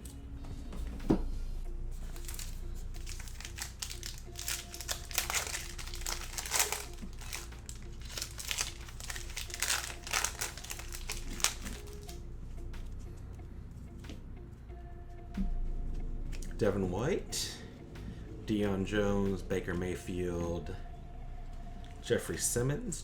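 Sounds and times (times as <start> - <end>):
wrapper crinkling and tearing: 2.0 - 12.2.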